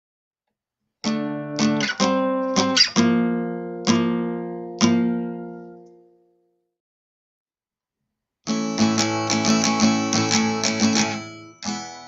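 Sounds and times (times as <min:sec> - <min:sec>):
acoustic guitar strumming: 0:01.0 - 0:05.9, 0:08.5 - 0:12.0.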